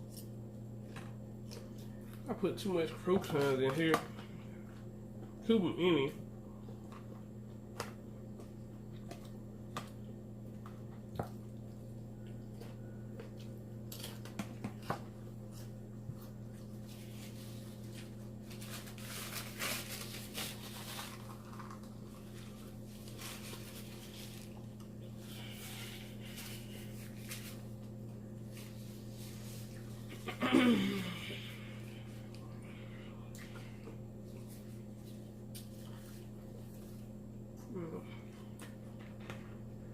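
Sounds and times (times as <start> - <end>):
chewing crunchy salad: 0.0 - 2.3, 6.6 - 18.1
steady low hum: 0.0 - 39.9.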